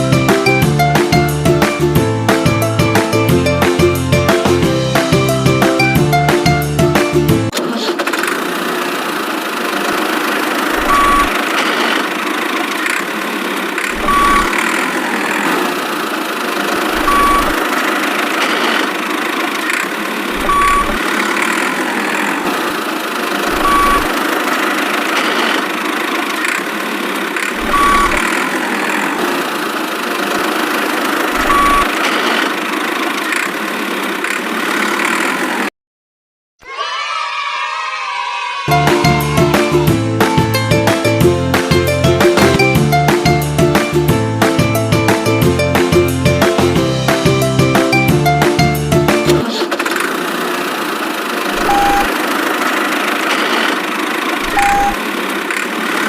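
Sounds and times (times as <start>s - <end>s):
short high beeps: 10.8s - 11.4s, 14.0s - 14.7s, 17.0s - 17.6s, 20.4s - 21.0s, 23.6s - 24.2s, 27.7s - 28.3s, 31.4s - 32.0s, 51.6s - 52.1s, 54.5s - 55.0s.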